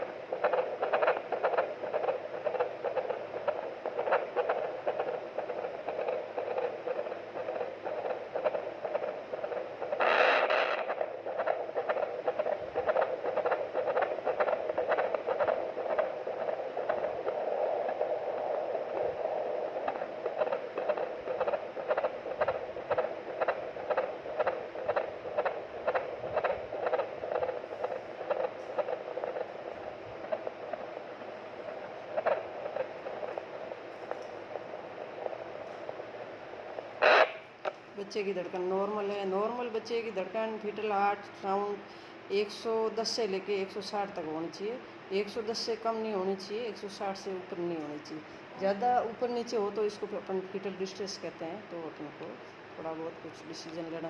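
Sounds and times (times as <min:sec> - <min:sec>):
whooshing heartbeat pulse: 0:00.0 - 0:37.1
burst of noise: 0:00.0 - 0:37.8
steady hiss: 0:00.0 - 0:54.0.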